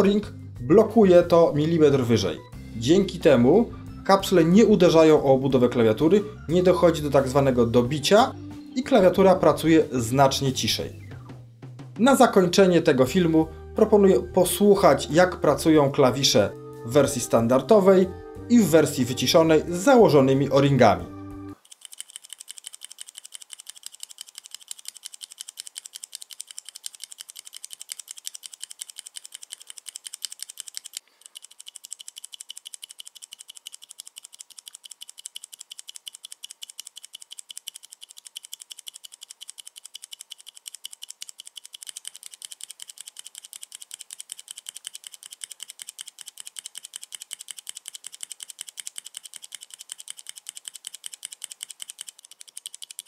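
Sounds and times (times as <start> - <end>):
mechanical keyboard typing: 21.6 - 53.0.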